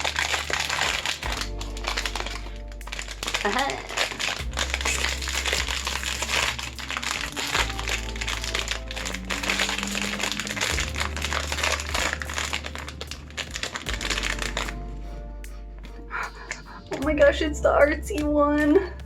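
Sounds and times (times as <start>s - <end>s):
packaging crinkling: 0.0s - 14.8s.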